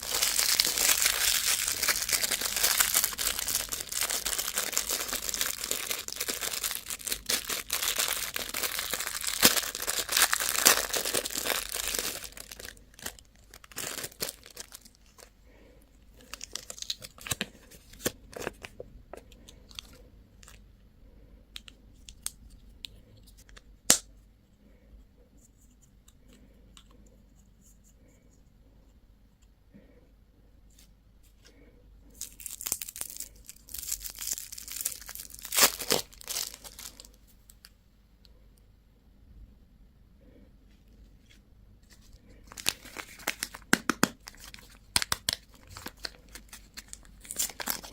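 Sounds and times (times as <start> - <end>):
candy wrapper tearing and crinkling: 0.0 - 15.3, 16.2 - 18.7, 32.2 - 37.7, 41.9 - 47.9.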